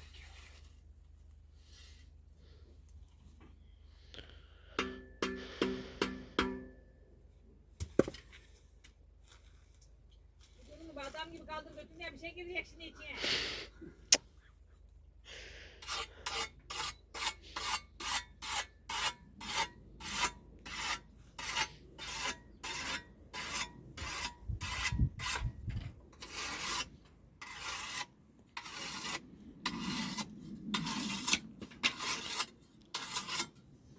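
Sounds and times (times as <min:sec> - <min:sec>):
rasping strokes on metal: 0:15.8 - 0:33.7.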